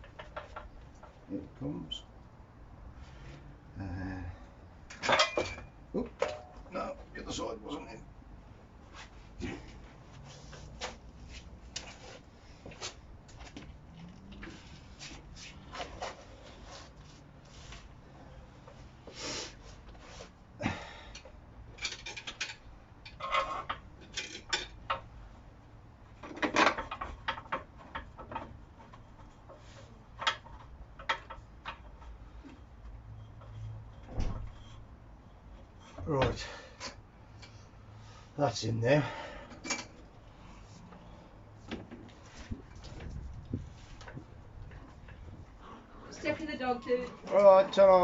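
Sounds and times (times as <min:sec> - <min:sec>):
hand tools clicking and clattering: 0:21.1 - 0:25.1.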